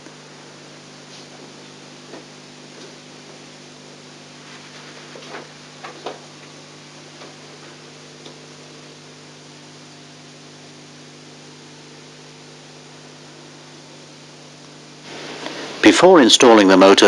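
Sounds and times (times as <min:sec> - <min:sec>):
tape hiss and mains hum: 0:00.0 - 0:17.0.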